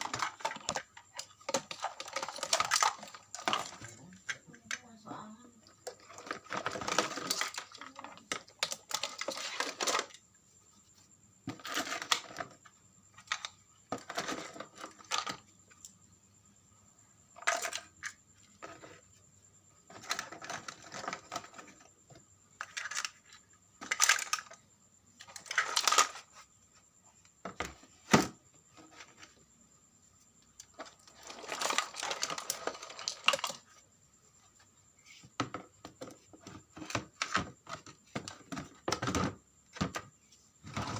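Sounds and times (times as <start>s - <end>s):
small parts and tools clicking: 0.0s - 4.9s, 5.8s - 10.2s.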